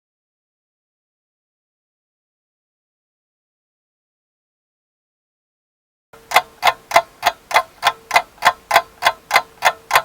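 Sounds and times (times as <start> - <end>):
clock ticking: 6.2 - 10.0.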